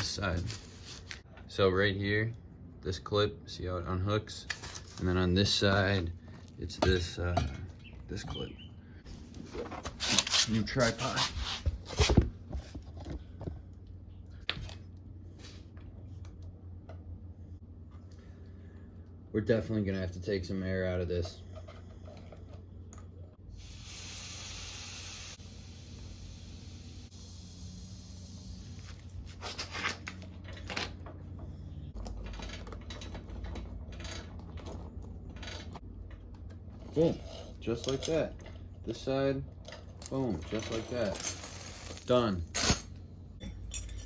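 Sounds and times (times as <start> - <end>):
low steady hum: 0.0 - 23.8, 25.3 - 44.0
light rustling of parts: 4.3 - 17.1, 20.8 - 23.4, 28.9 - 44.0
clicks and clatter of hand tools: 37.7 - 38.6.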